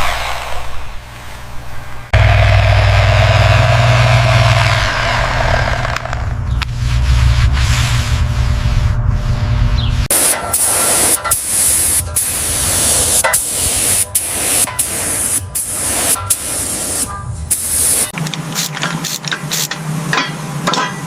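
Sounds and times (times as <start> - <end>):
low rumble: 1.6 - 10.1
spray hissing in bursts: 10.1 - 19.7.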